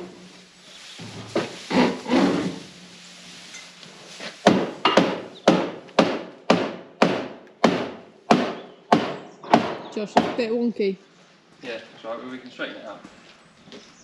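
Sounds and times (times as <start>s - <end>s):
metal scraping clunks: 0.9s - 3.8s.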